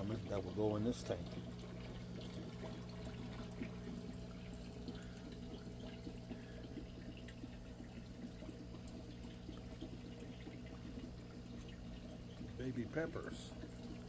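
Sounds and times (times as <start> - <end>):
steady low hum: 0.0 - 14.0
water dripping: 0.0 - 14.0
water trickling and pouring: 0.0 - 14.0.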